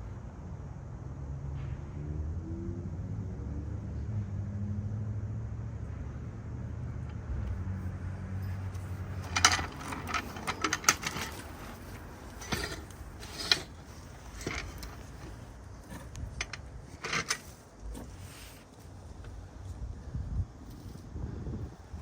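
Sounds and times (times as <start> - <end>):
metallic tool clicks and clanks: 8.4 - 17.6.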